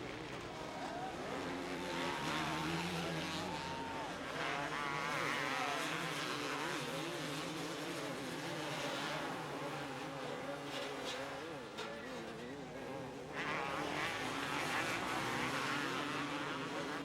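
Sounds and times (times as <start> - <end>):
motocross motorcycle engines racing: 0.0 - 17.0.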